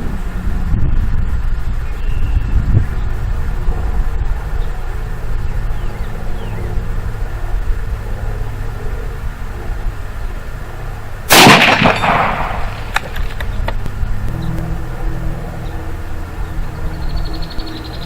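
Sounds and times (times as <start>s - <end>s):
steady low hum: 0.0s - 18.0s
rifle shot: 11.3s - 13.4s.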